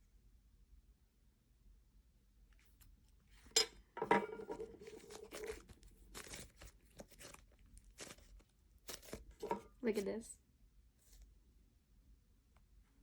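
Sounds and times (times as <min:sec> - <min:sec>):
hands squishing slime: 0:04.8 - 0:10.2.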